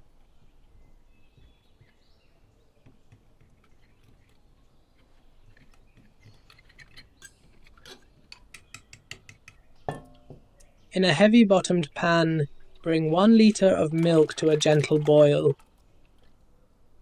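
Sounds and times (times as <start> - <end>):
spoon tapping in a bowl: 8.6 - 10.4.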